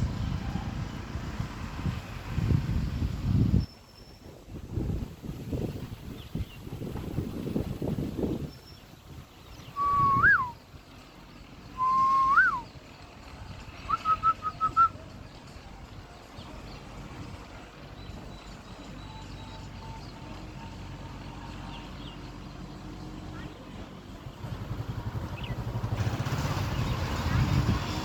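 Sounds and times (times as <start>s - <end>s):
low steady rumble: 4.5s - 28.0s
bird whistling: 9.5s - 10.6s, 11.8s - 12.8s, 13.8s - 15.0s.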